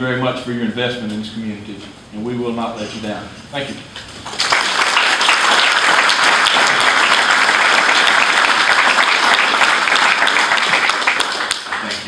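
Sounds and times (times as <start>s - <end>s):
audience applauding: 4.3s - 12.0s.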